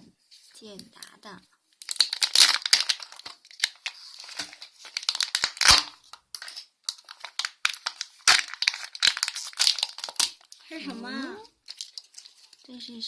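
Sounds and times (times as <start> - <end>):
foil wrapper crinkling and tearing: 1.8 - 10.8, 11.6 - 13.0.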